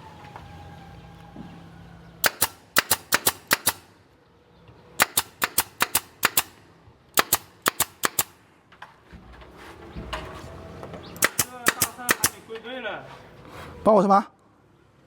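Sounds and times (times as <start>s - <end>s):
sharp cracking strikes: 2.2s - 3.9s, 5.0s - 6.6s, 7.2s - 8.4s, 11.2s - 12.4s.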